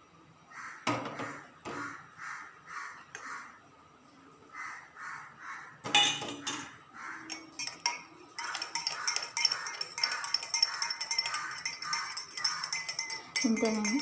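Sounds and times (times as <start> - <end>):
spoon clinking against a vessel: 7.3 - 14.0.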